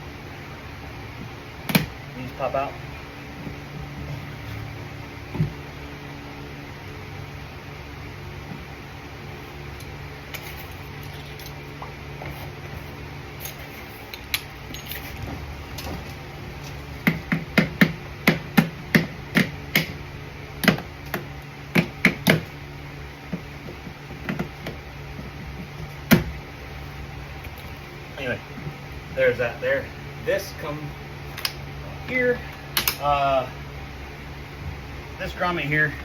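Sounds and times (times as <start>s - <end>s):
steady low hum: 0.0s - 36.0s
sharp clicks and knocks: 23.3s - 26.4s, 32.8s - 33.0s.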